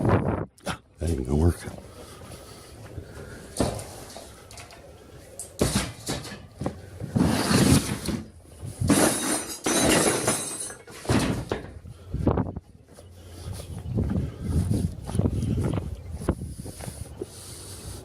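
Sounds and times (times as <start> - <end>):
hard objects clattering and knocking: 5.5 - 11.8.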